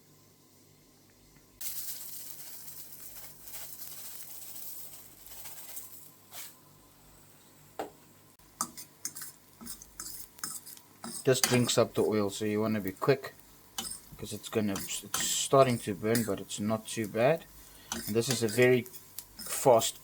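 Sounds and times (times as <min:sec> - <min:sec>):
onion sizzling in hot oil: 0:01.6 - 0:07.2, 0:08.4 - 0:20.0
utensil clinking on pan: 0:08.6 - 0:11.8, 0:13.8 - 0:16.4, 0:17.9 - 0:19.7.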